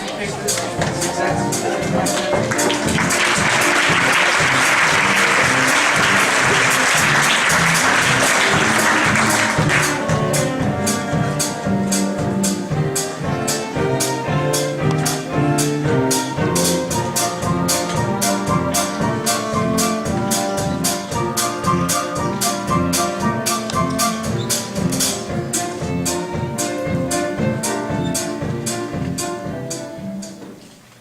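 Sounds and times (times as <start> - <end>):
band music with brass: 0.0 - 30.6
audience applauding: 1.6 - 10.6.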